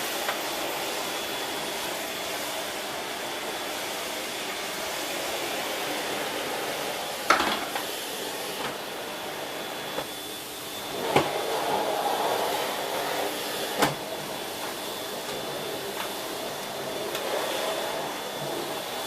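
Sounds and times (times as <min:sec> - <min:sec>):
vacuum cleaner running: 0:00.0 - 0:19.0.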